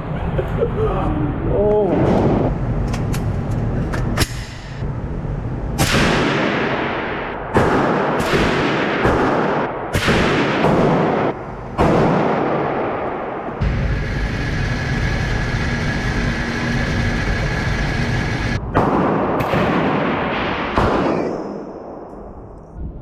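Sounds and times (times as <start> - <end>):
loud gunshots: 5.8 - 22.1.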